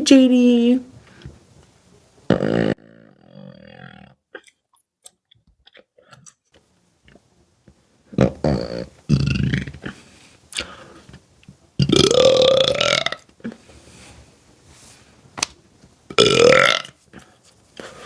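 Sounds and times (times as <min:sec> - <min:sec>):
woman burping loudly: 0:02.3 - 0:04.5, 0:11.8 - 0:13.2, 0:16.1 - 0:17.0.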